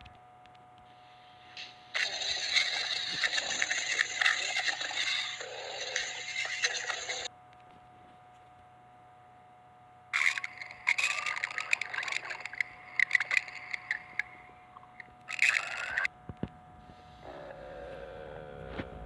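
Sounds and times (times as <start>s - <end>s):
faint steady hum: 0.0s - 19.0s
cartoon stomach growling: 2.0s - 7.3s, 10.2s - 16.1s, 17.2s - 19.0s.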